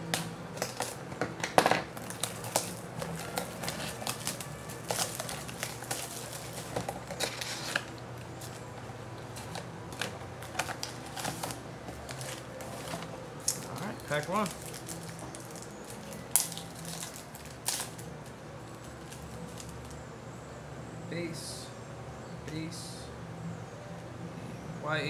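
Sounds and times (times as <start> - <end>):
wrapper crinkling and rustling: 0.6 - 1.0, 1.8 - 20.0.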